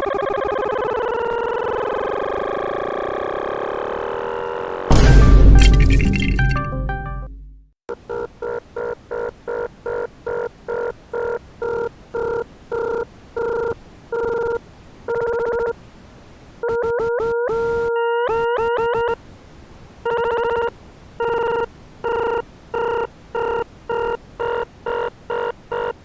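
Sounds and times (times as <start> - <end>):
buzzy tone beeping: 0.0 - 5.0, 16.6 - 19.2, 20.1 - 26.0
cluster of synthesized tones: 16.6 - 19.2.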